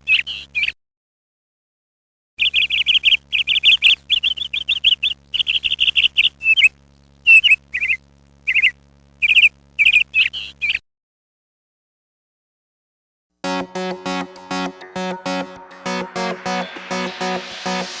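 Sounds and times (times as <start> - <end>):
small bird chirping: 2.4 - 10.8.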